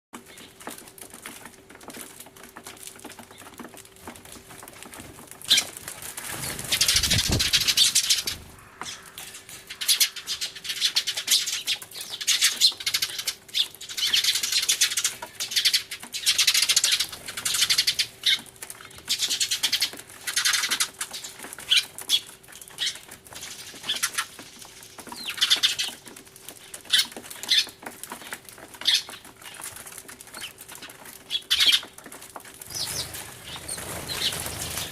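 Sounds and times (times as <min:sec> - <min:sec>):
sparrows chirping: 0:05.4 - 0:05.8, 0:06.4 - 0:29.7, 0:30.3 - 0:32.0, 0:32.6 - 0:34.9.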